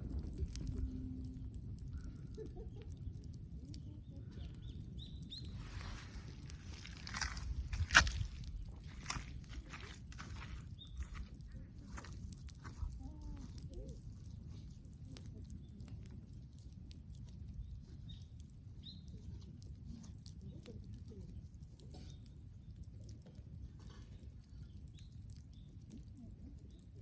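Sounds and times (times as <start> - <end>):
low rumble: 0.0 - 17.7
bonfire crackling: 0.0 - 27.0.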